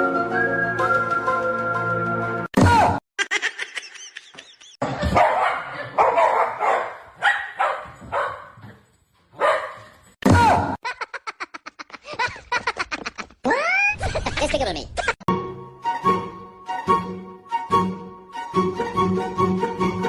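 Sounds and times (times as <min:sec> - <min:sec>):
dog barking: 0:05.0 - 0:10.0.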